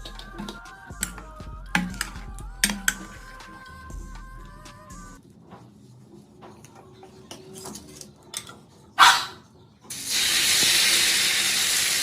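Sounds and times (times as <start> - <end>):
batter sizzling in hot pan: 9.9 - 12.0.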